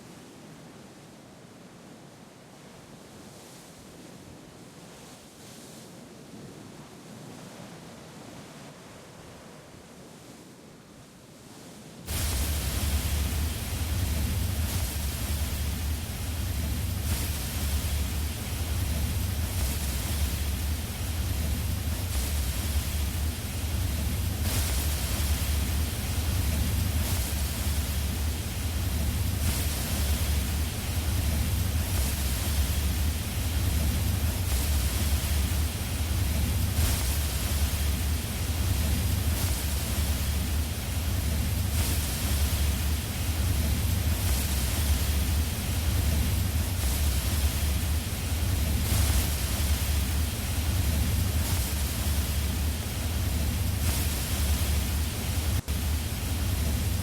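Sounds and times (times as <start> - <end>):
faint hiss: 0.0 - 57.0
rushing noise with deep rumble: 12.1 - 57.0.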